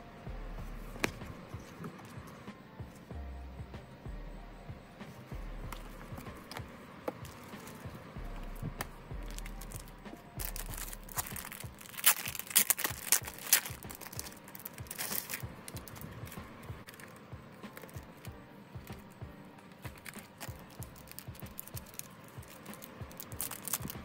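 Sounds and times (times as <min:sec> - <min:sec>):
quiet background music: 0:00.0 - 0:24.0
packaging crinkling and tearing: 0:09.2 - 0:19.0, 0:19.7 - 0:24.0.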